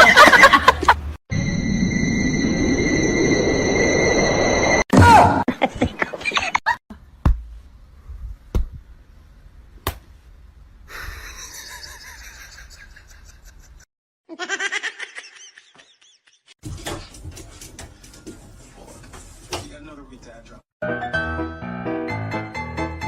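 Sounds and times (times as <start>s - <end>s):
people laughing: 0.0s - 1.0s, 11.2s - 13.8s.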